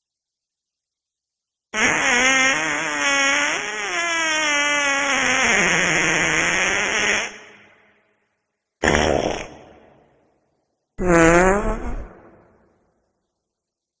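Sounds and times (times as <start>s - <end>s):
fart sounds: 1.8s - 7.8s, 8.8s - 10.1s, 11.0s - 12.7s.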